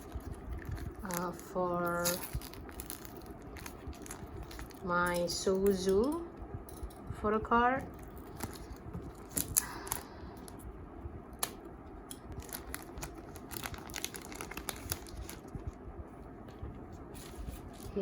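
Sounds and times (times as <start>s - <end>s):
packaging crinkling: 0.0s - 5.3s, 8.0s - 10.6s, 12.2s - 15.8s.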